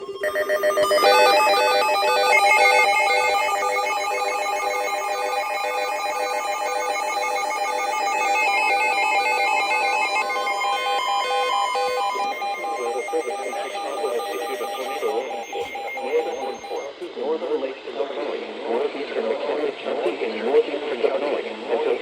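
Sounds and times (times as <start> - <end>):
electronic ringtone tune: 0.0 - 16.9.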